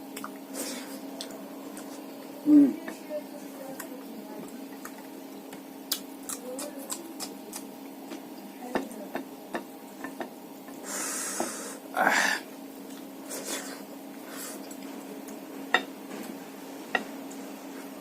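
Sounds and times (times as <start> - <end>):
chewing with wet mouth clicks: 0.1 - 0.5, 4.7 - 8.5.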